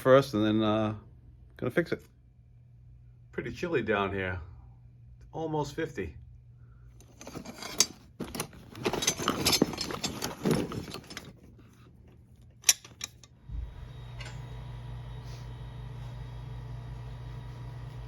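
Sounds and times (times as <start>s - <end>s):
steady low hum: 0.0s - 18.0s
metal hand tools clattering: 7.0s - 11.5s, 12.6s - 13.3s.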